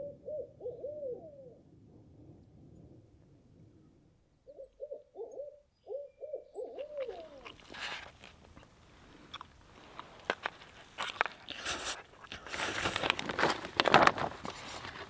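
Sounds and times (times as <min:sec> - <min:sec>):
owl hooting: 0:00.0 - 0:01.7, 0:03.8 - 0:07.8
clicks and rustling: 0:06.8 - 0:15.0.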